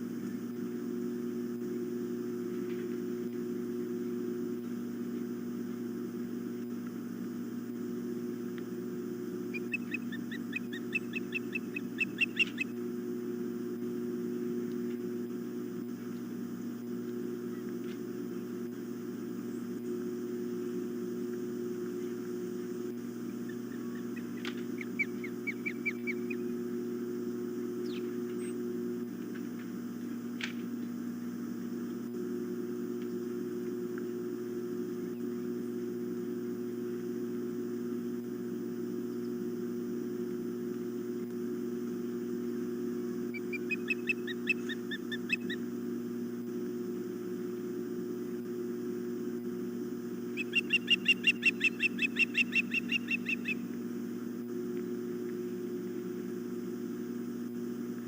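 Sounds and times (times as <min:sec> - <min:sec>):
electrical hum: 0:00.0 - 0:58.0
osprey whistled chirps: 0:09.5 - 0:12.7, 0:23.5 - 0:26.4, 0:27.8 - 0:28.6, 0:43.3 - 0:45.6, 0:50.4 - 0:53.6.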